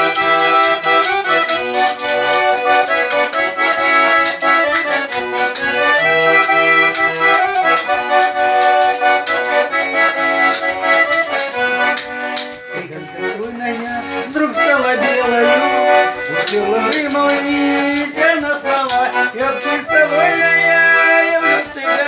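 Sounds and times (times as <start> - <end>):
accordion playing: 0.0 - 22.0
clicking beat: 0.0 - 22.0
person singing: 5.6 - 9.6, 12.6 - 22.0.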